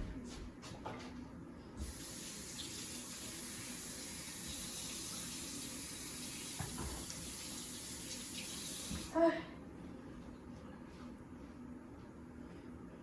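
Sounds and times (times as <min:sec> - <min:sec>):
tap water running into sink: 0:01.8 - 0:09.1.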